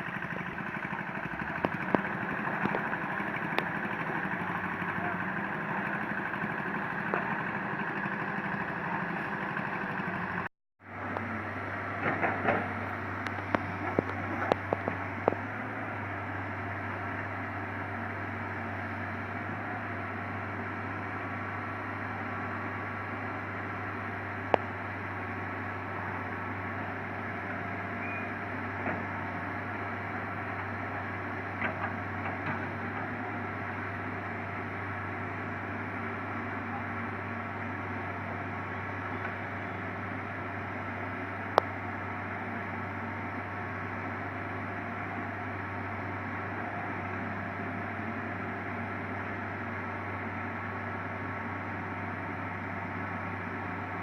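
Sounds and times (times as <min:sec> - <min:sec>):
diesel engine humming: 0:00.0 - 0:54.0.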